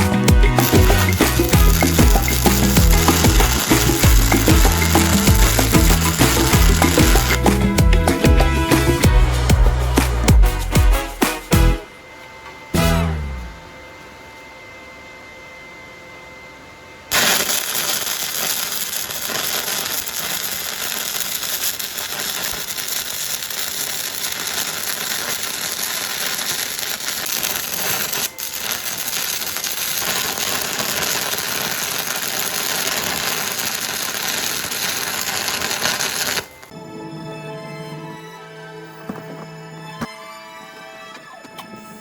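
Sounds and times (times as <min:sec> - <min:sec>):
welding arc crackling: 0:00.0 - 0:09.2, 0:17.1 - 0:36.7.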